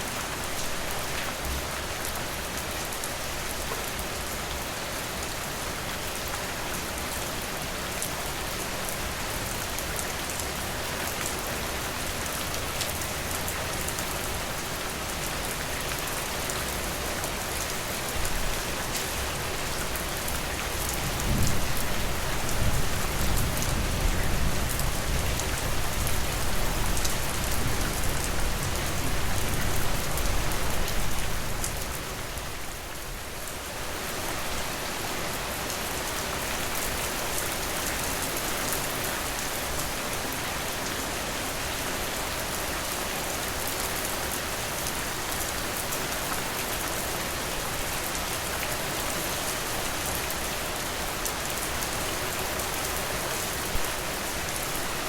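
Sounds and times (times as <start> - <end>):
heavy rain: 0.0 - 55.0.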